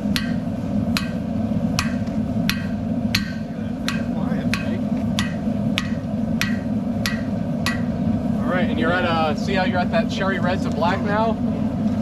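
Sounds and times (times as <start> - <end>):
hammer striking iron on anvil: 0.0 - 8.1
steady low rumble: 0.0 - 12.0.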